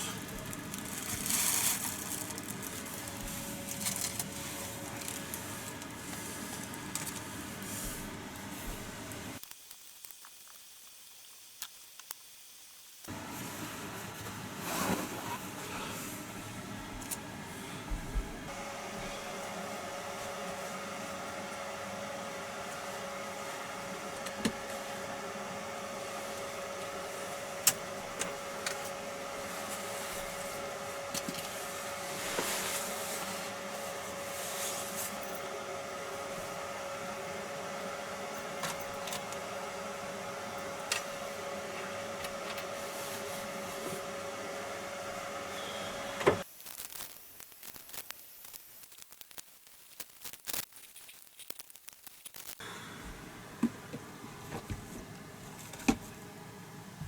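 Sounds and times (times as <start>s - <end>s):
small rustling sounds: 0.0s - 12.3s, 25.8s - 35.4s
machine hum: 13.1s - 46.5s, 52.6s - 57.0s.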